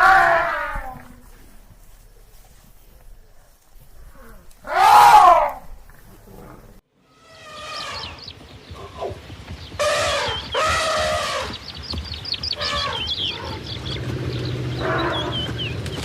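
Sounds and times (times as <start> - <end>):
elephant trumpeting: 0.0 - 1.3, 4.0 - 9.2, 9.8 - 11.6, 12.6 - 13.7, 14.6 - 15.6.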